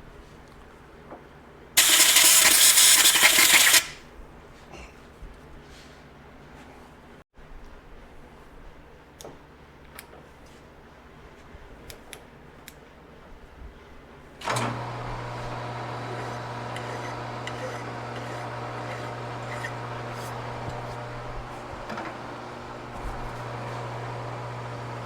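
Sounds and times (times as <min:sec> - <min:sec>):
lathe motor humming: 0:01.8 - 0:04.0, 0:14.5 - 0:25.0.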